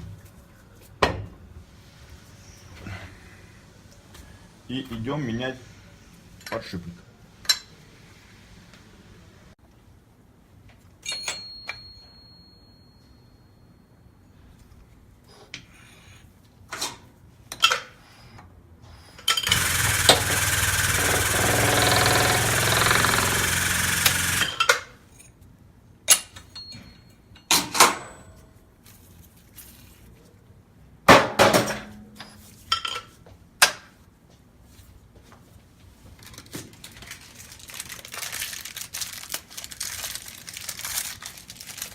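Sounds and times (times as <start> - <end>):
power tool running: 19.4 - 24.6.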